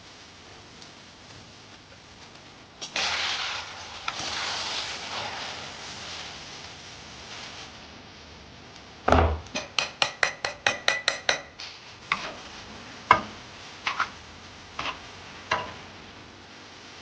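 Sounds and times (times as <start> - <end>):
knock: 9.1 - 10.0.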